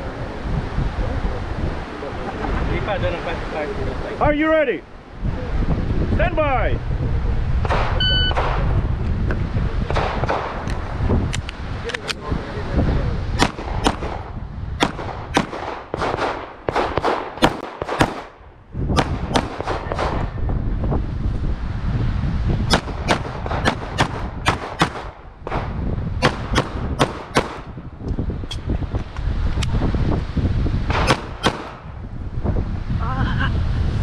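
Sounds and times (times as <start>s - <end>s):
handgun shots: 14.8s - 18.3s, 30.9s - 31.8s.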